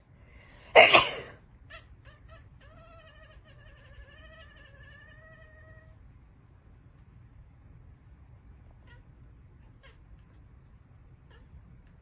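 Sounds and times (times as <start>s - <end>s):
person sneezing: 0.7s - 1.4s
cat meowing: 1.7s - 6.0s.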